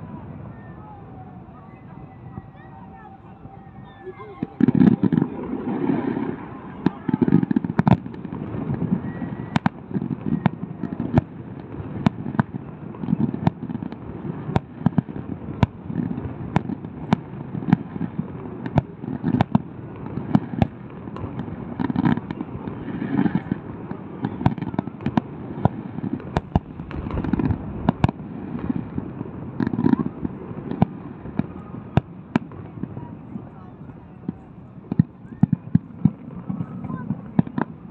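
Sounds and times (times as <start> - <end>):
fireworks sharp bangs: 0.0 - 37.9
low booms of bursting shells: 24.3 - 32.5.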